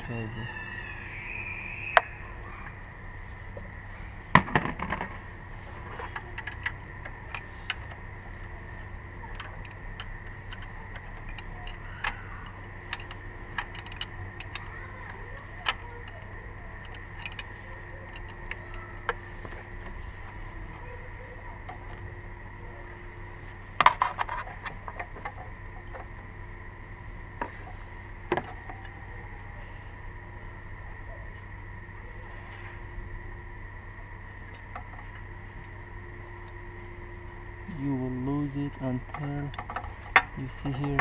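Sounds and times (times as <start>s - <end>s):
low hum: 0.0s - 41.0s
screwdriver clinking on metal: 16.8s - 18.8s.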